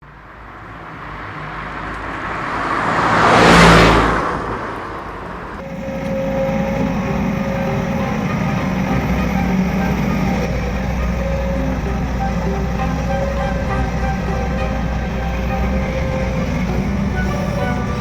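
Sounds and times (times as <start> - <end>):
road vehicle passing: 0.1 - 18.0
steady hum with held tones: 5.6 - 18.0.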